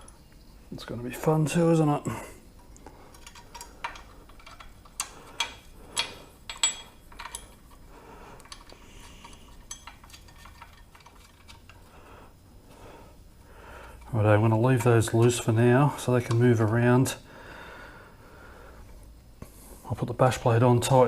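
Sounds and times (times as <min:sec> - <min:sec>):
metal tools clinking: 0:02.6 - 0:07.8, 0:08.4 - 0:11.8.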